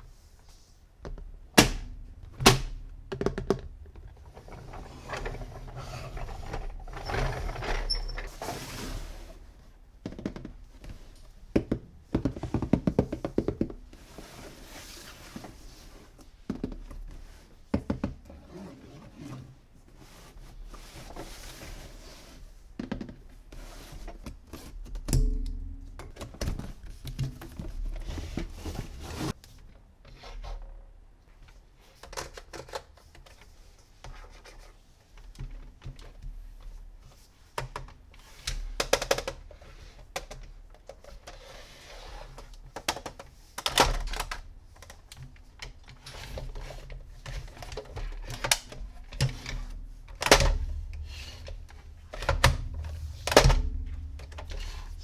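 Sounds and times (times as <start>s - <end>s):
plastic toy parts clicking and knocking: 42.8s - 45.8s.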